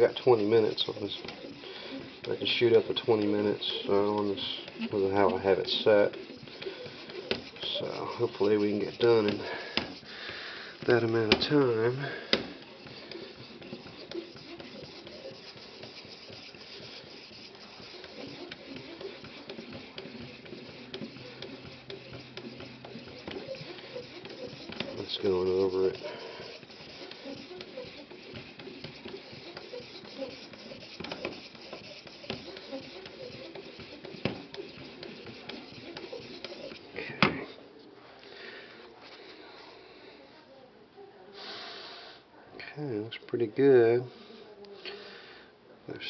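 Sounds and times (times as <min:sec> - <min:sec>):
stone scraping knife edge: 0:10.7 - 0:37.4.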